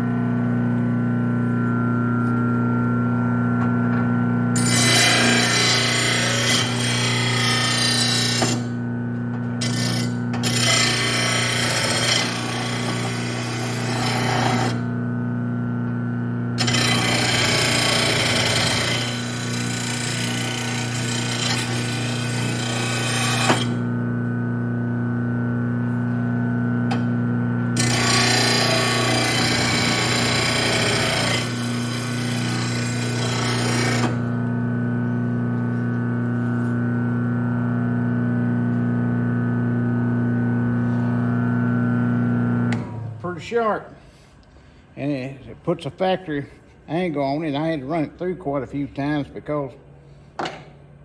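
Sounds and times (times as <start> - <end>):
blade sharpener motor hum: 4.4 - 25.4, 26.0 - 37.3
blade grinding on wheel: 4.6 - 8.8, 9.6 - 15.0, 16.6 - 23.9, 27.8 - 34.5.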